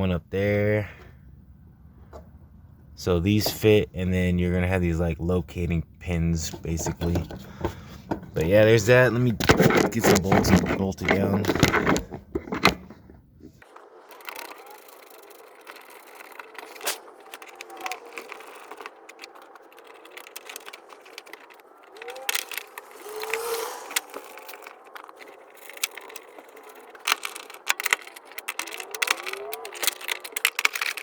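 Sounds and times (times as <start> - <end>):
metal bolts clicking and rattling: 6.4 - 31.0.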